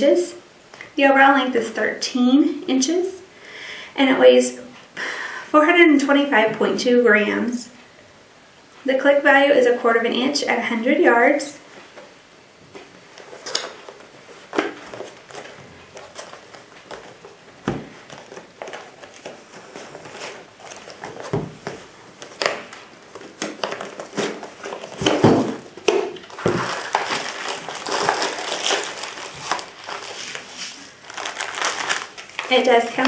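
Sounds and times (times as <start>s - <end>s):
packaging crinkling: 13.2s - 33.0s.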